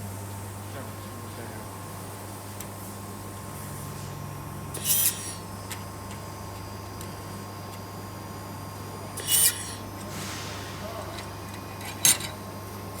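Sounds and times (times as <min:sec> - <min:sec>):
steady machine hum: 0:00.0 - 0:13.0
laser welder sharp hiss: 0:09.2 - 0:11.0.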